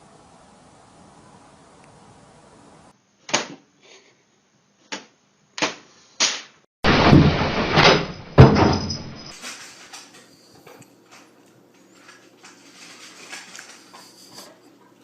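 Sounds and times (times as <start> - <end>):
noisy clatter: 6.8 - 11.3
hard thump: 6.9 - 9.4.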